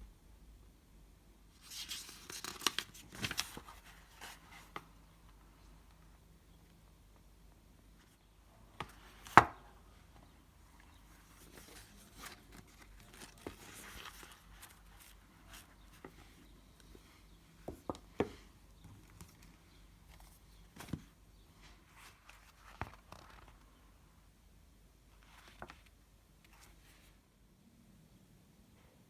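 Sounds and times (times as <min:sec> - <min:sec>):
soft rustling of papers: 0:01.5 - 0:24.0, 0:25.0 - 0:27.4.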